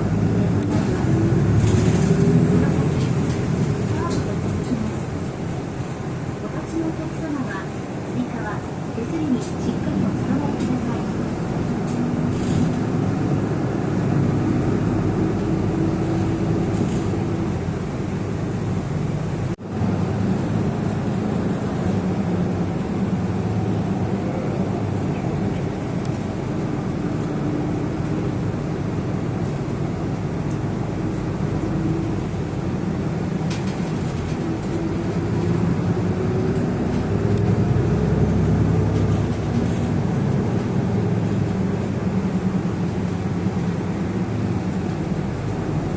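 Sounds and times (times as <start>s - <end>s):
vehicle engine and road noise: 0.0s - 45.9s.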